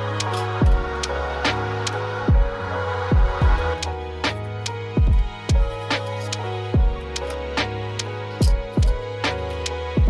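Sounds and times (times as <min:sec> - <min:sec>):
deep kick drums: 0:00.6 - 0:01.0, 0:02.3 - 0:03.8, 0:05.0 - 0:05.8, 0:06.8 - 0:07.2, 0:08.4 - 0:09.2.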